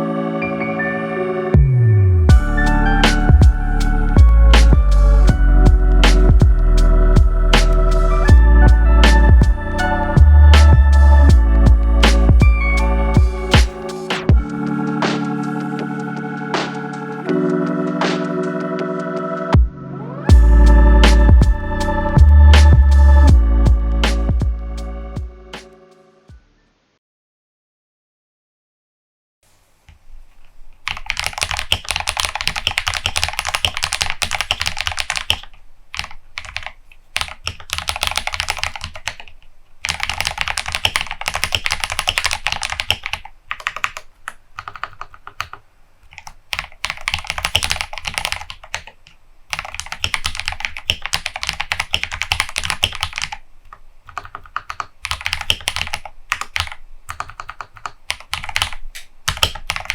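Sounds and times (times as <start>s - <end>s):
fast typing on mechanical keyboard: 30.8s - 53.4s, 54.1s - 59.9s.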